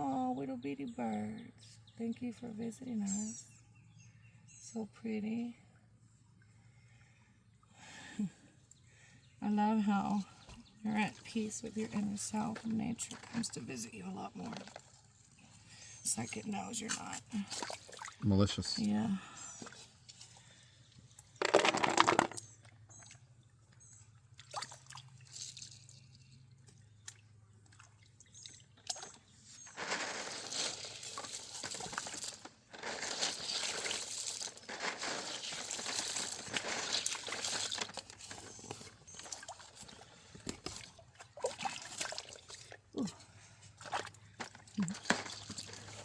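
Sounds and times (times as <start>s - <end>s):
water pouring and sloshing: 10.3s - 18.9s, 21.0s - 46.0s.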